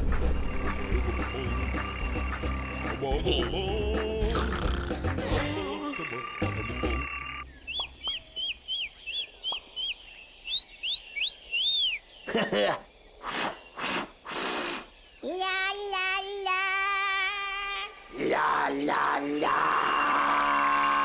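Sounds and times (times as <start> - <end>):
high cartoon chirps: 0.0 - 12.5.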